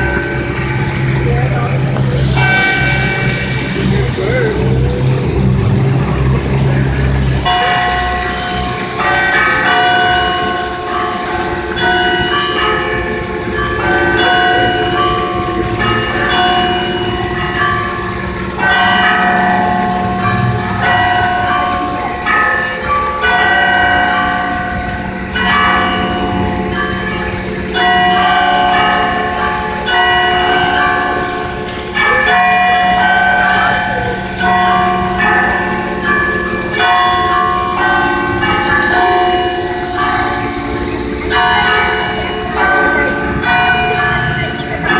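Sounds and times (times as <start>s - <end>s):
church bells ringing: 0.0s - 44.9s.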